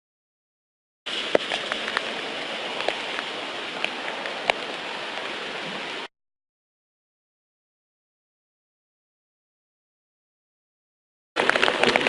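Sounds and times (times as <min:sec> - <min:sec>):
rain falling: 0:01.1 - 0:06.1, 0:11.4 - 0:12.0.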